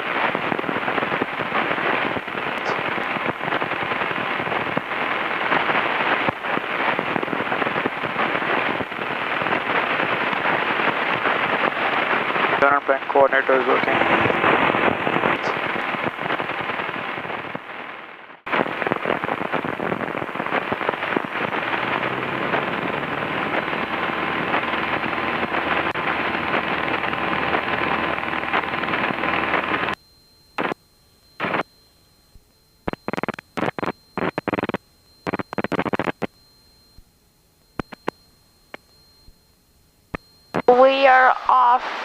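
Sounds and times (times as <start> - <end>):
aircraft engine noise over intercom: 12.5 - 16.5.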